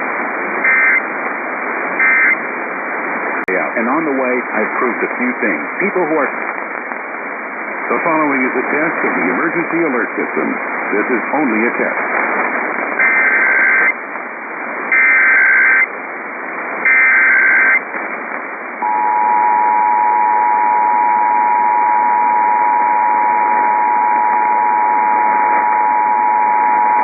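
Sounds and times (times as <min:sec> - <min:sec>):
radio hiss: 0:00.0 - 0:27.0
data bursts: 0:00.6 - 0:01.0, 0:02.0 - 0:02.4, 0:13.0 - 0:14.0, 0:14.9 - 0:15.9, 0:16.8 - 0:17.8
two-tone alert signal: 0:18.8 - 0:27.0.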